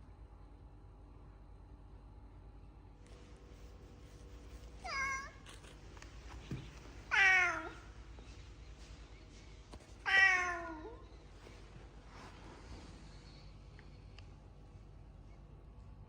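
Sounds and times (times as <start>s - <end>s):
cat meowing: 4.8s - 5.7s, 7.1s - 8.0s, 10.0s - 11.0s.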